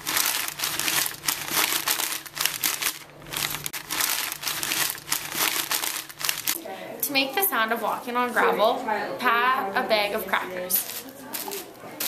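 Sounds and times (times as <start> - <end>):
newspaper crumpling: 0.0 - 6.6, 10.8 - 11.7.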